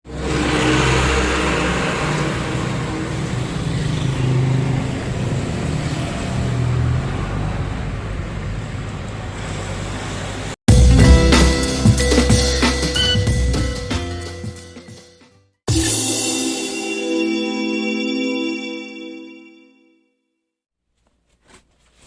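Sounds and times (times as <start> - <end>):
road noise: 0.1 - 10.6.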